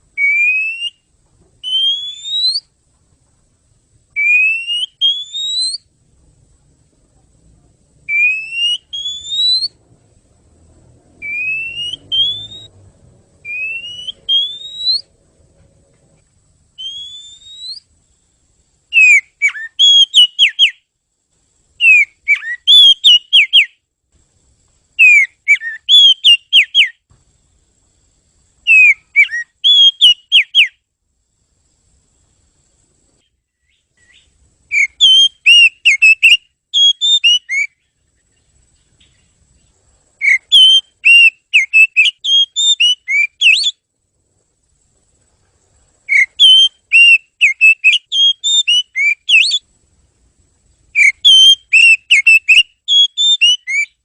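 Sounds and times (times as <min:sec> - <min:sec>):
songbird whistling and warbling: 0:00.2 - 0:02.7, 0:04.2 - 0:05.9, 0:08.1 - 0:09.8, 0:11.2 - 0:12.8, 0:13.4 - 0:15.1, 0:16.8 - 0:18.0, 0:18.9 - 0:20.8, 0:21.8 - 0:23.8, 0:25.0 - 0:27.0, 0:28.6 - 0:30.8, 0:33.2 - 0:39.3, 0:40.2 - 0:43.8, 0:46.0 - 0:49.7, 0:51.0 - 0:54.0.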